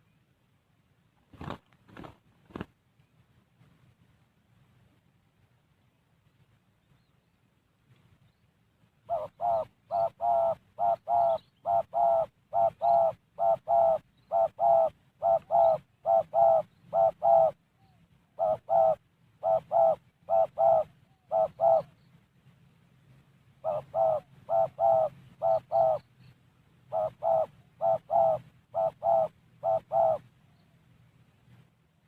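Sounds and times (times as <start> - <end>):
dove cooing: 9.0 - 22.1, 23.6 - 30.9.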